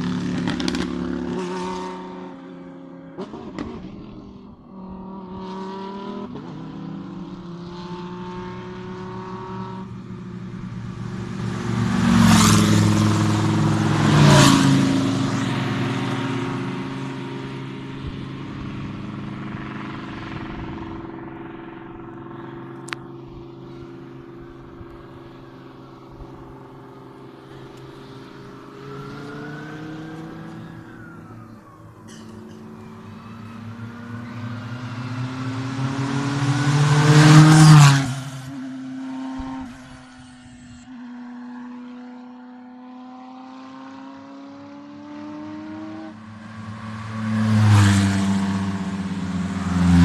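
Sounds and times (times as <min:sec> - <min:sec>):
race cars driving past: 0:00.0 - 0:50.0
engine revving up: 0:28.8 - 0:40.2.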